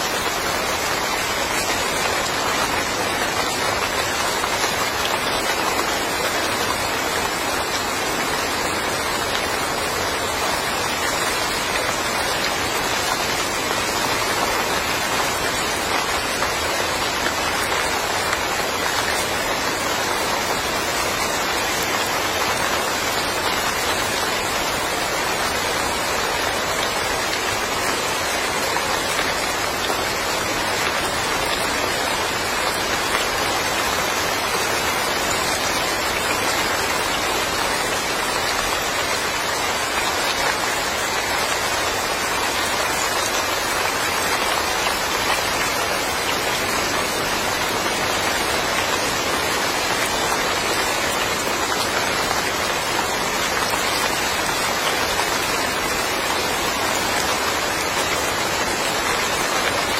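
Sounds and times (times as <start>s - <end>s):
rain falling on surfaces: 0.0s - 59.9s.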